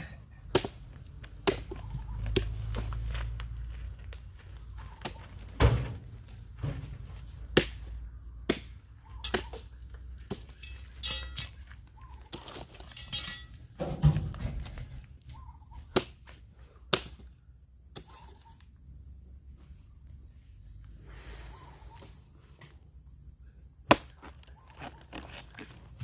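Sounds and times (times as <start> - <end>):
heavy thuds and knocks: 13.7 - 15.0.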